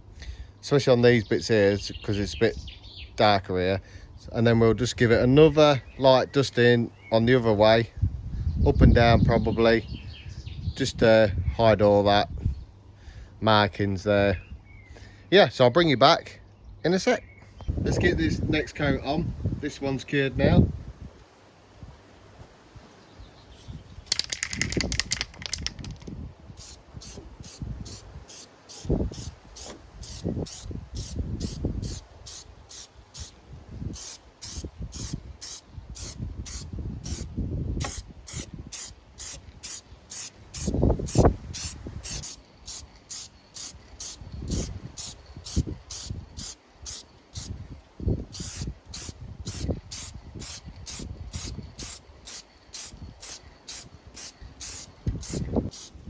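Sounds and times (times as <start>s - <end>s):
spray paint can hissing: 24.0s - 47.6s, 48.2s - 56.0s.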